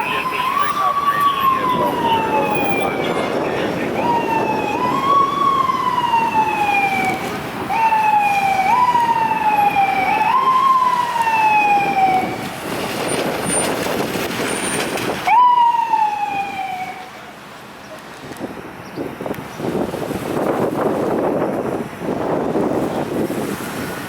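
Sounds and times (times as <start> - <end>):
emergency vehicle siren: 0.0 - 17.4
engine and traffic rumble: 0.0 - 24.0.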